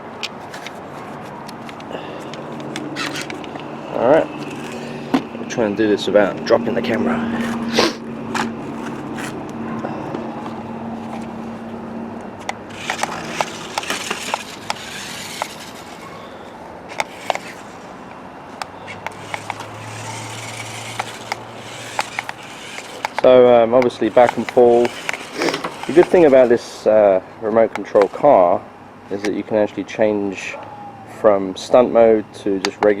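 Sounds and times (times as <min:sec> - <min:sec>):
tyres rolling and scraping: 0:00.0 - 0:26.7
small electric motor whine: 0:01.7 - 0:18.1, 0:18.8 - 0:26.6.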